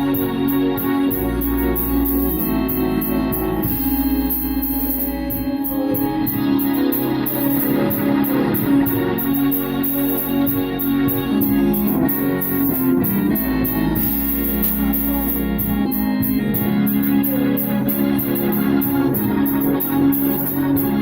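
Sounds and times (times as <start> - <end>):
gospel organ chords: 0.0 - 21.0.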